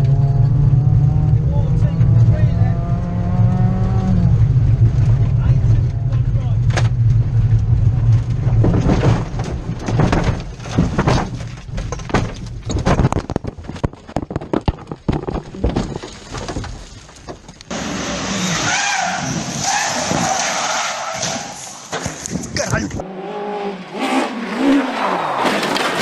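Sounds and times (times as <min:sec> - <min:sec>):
clatter of knocks and impacts: 0:07.9 - 0:17.7
rally car skidding: 0:17.8 - 0:21.9, 0:23.1 - 0:26.0.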